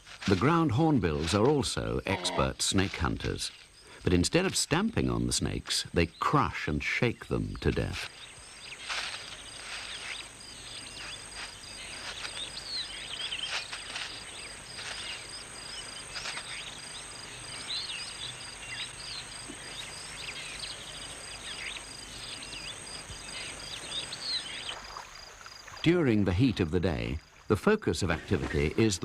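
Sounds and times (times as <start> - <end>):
bird chirps: 5.8 - 25.0
high insect whine: 8.1 - 25.8.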